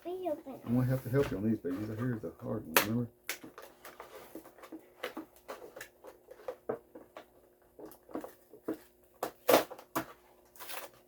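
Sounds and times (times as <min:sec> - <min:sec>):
plastic packaging clicks and crinkles: 0:02.8 - 0:11.0.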